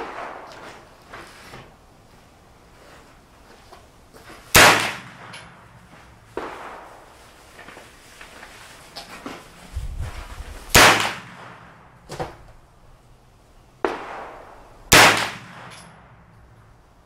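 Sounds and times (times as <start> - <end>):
loud gunshots: 0.0 - 0.5, 4.5 - 5.4, 10.7 - 11.8, 13.8 - 15.8
faint gunshots: 0.0 - 0.9, 4.5 - 7.2, 10.7 - 12.3, 13.8 - 16.3.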